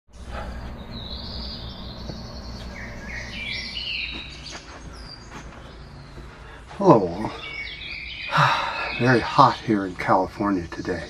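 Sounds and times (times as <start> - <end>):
low background rumble: 0.1 - 8.2
songbird chirping: 0.1 - 11.0.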